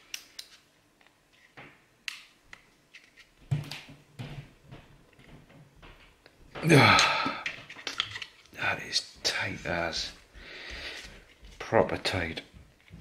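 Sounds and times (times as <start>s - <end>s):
person straining: 6.6s - 7.6s.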